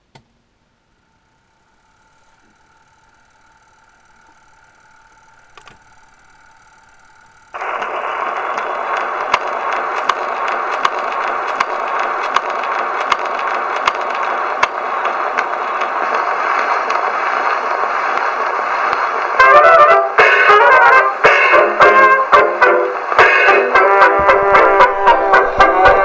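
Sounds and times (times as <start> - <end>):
phonograph surface hiss: 0.0 - 26.0
record clicking: 2.2 - 19.4.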